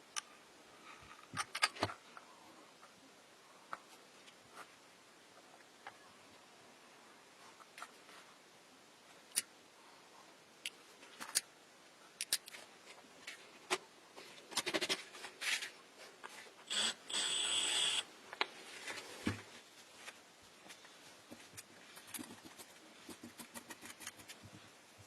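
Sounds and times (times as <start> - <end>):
parts clicking and scraping: 10.6 - 11.5, 12.2 - 13.8
small high-pitched motor: 16.7 - 18.1.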